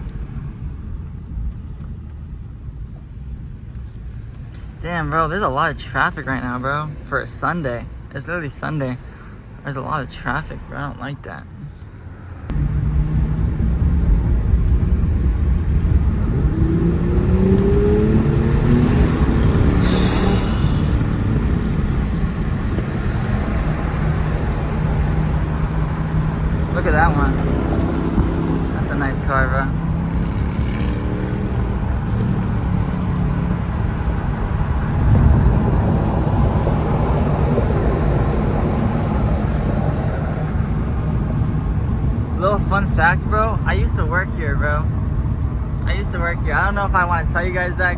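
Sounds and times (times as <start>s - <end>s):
road rumble: 0.0s - 47.9s
car engine accelerating: 11.3s - 42.5s.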